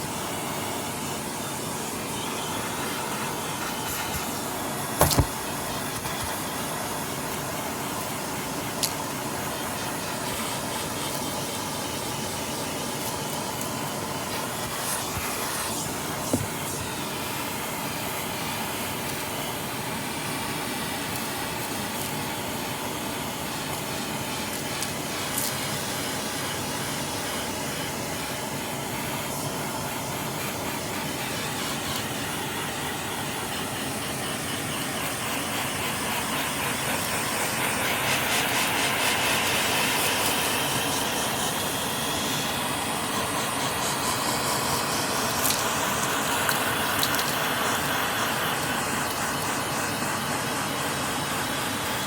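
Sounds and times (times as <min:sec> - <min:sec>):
vacuum cleaner running: 0:00.0 - 0:52.0
debris ticking against nozzle: 0:45.2 - 0:47.5.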